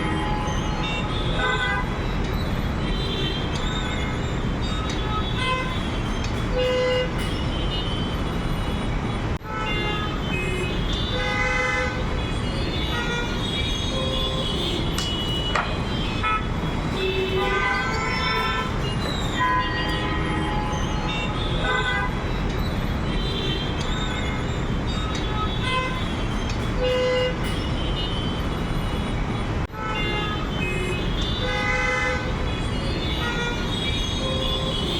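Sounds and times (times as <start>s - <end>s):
vehicle horns honking: 0.0s - 2.0s, 2.9s - 8.6s, 9.4s - 22.5s, 23.1s - 34.9s
rumble of traffic engines: 0.0s - 34.9s.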